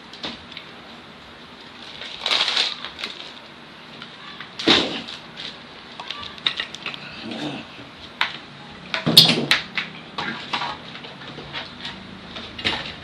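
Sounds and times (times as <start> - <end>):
packaging crinkling and rustling: 1.6 - 3.5.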